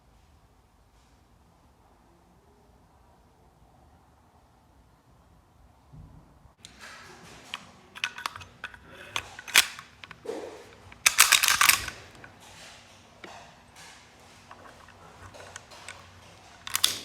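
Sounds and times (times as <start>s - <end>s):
airsoft pistol parts clicking: 7.5s - 12.4s, 14.5s - 17.0s.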